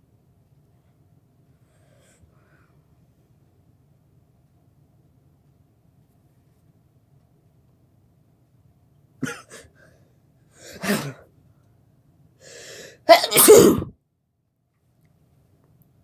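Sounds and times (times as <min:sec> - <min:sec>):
person sneezing: 0:09.2 - 0:09.7, 0:10.6 - 0:11.2, 0:12.5 - 0:13.9
breath drawn in: 0:10.6 - 0:11.2, 0:12.5 - 0:13.9.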